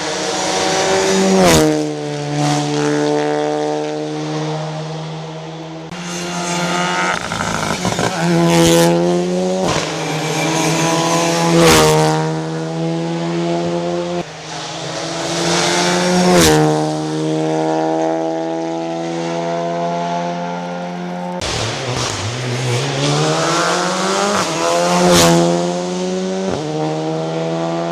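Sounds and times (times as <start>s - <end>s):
rally car engine revving: 0.0s - 27.9s
sharp crack at gear changes: 5.9s - 12.7s, 20.6s - 26.0s.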